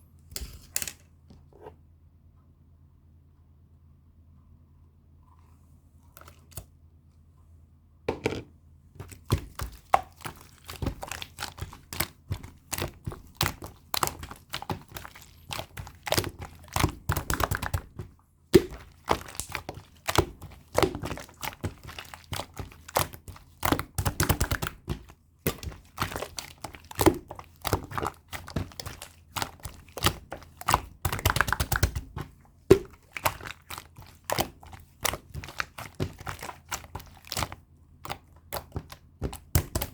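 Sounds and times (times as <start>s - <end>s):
slime squished by hand: 9.0s - 39.9s.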